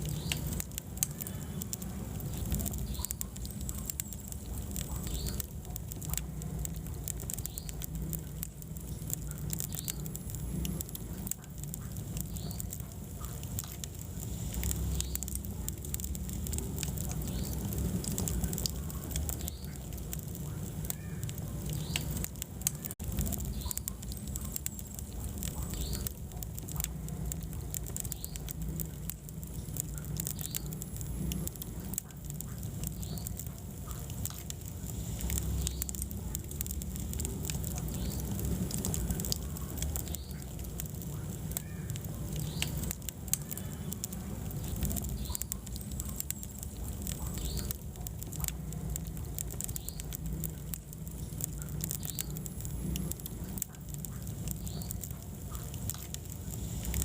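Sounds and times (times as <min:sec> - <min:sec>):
fire crackling in fireplace: 0:00.0 - 0:57.0.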